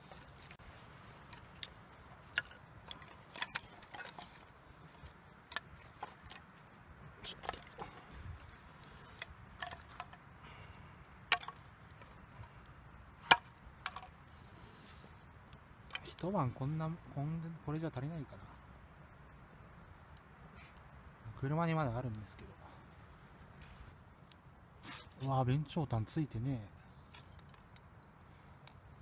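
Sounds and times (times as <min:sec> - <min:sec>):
hard pieces clicking and knocking: 0:11.3 - 0:11.6, 0:13.2 - 0:14.1.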